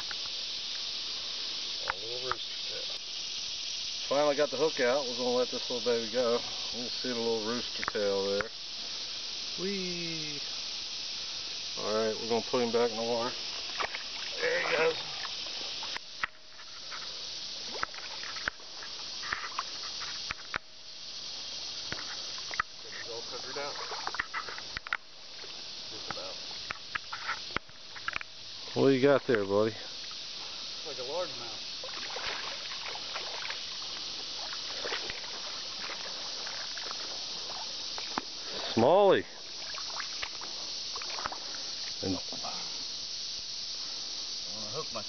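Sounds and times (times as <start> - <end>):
creek water running: 0.0 - 45.0
creek water rushing: 11.2 - 16.1, 21.8 - 26.7, 29.9 - 42.4
faint clicks: 24.1 - 25.0, 26.1 - 28.3.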